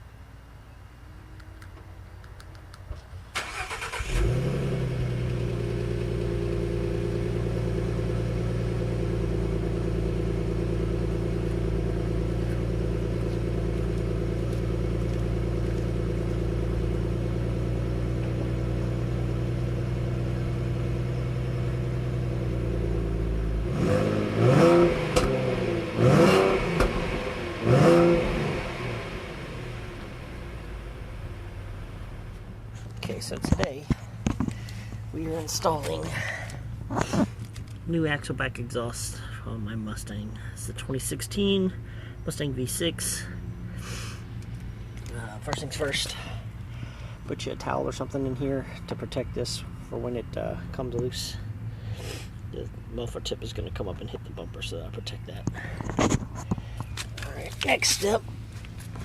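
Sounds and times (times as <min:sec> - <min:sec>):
car engine starting and idling: 0:03.2 - 0:59.0
car engine revving: 0:03.4 - 0:32.5.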